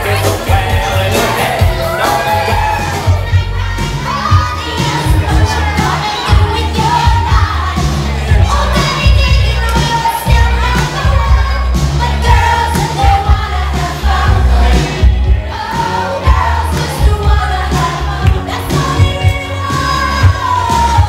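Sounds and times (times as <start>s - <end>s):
song with sung melody and drum beat: 0.0s - 21.0s.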